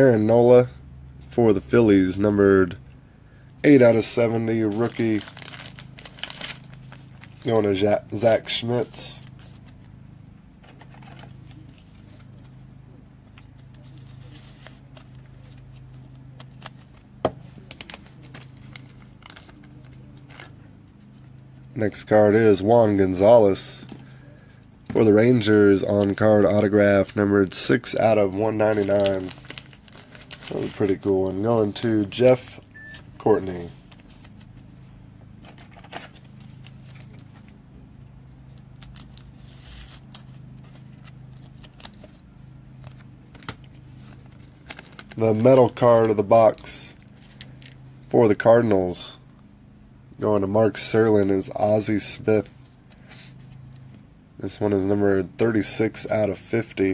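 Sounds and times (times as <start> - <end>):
low steady hum: 0.0 - 56.9
card stock rustling: 3.7 - 10.0, 10.6 - 21.7, 22.5 - 32.5, 33.2 - 37.6, 38.5 - 47.8.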